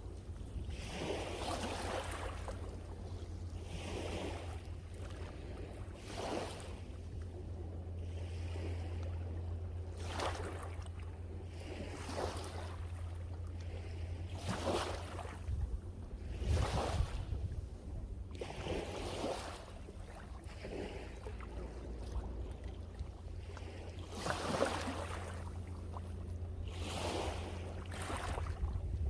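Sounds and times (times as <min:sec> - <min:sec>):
wind rumble on microphone: 0:00.0 - 0:09.3, 0:13.7 - 0:29.0
sea waves breaking: 0:00.0 - 0:29.0.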